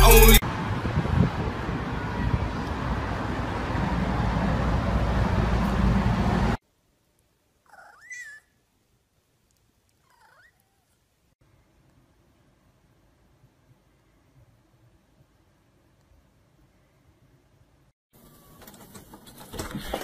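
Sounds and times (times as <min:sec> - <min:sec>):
cat meowing: 0:10.1 - 0:11.0.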